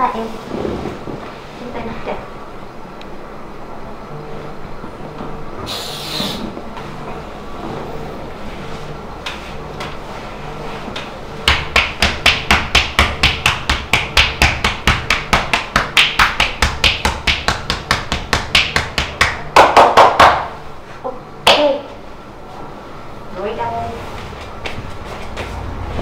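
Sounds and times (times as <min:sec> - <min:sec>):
low background hum: 0:00.0 - 0:26.0
hands slapping and tapping body: 0:11.0 - 0:20.5, 0:21.5 - 0:21.7.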